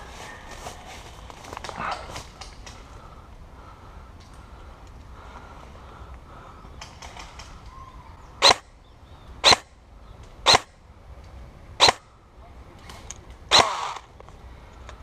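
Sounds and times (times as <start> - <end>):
airsoft gun shots: 8.4 - 8.6, 9.4 - 9.7, 10.4 - 10.7, 11.8 - 12.0, 13.5 - 14.0.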